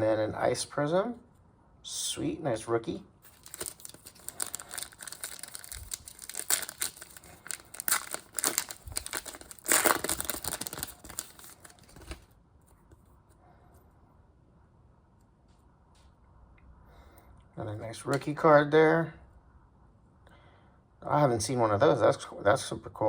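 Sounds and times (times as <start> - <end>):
foil wrapper crinkling and tearing: 3.3 - 12.3
cards being handled: 3.3 - 13.0.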